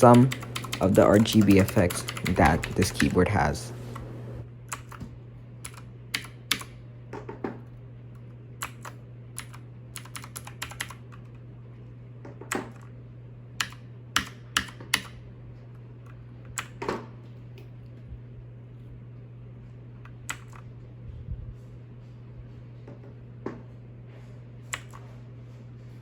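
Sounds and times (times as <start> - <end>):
mechanical keyboard clicks: 0.0 - 3.2, 5.6 - 6.7, 8.6 - 11.0, 13.6 - 15.2.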